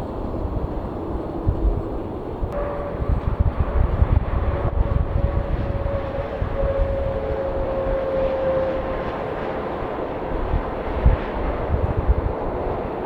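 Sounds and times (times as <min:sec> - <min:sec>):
jet engines roaring: 0:00.0 - 0:13.0
engine whine: 0:00.1 - 0:13.0
uneven low rumble: 0:02.5 - 0:08.6.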